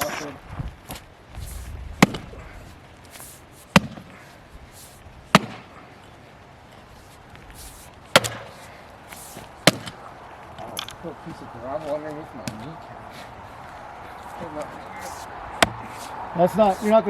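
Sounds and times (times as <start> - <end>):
axe chopping wood: 2.0 - 2.4, 3.6 - 4.1, 5.3 - 5.7, 8.1 - 8.7, 9.4 - 10.1, 15.0 - 17.0.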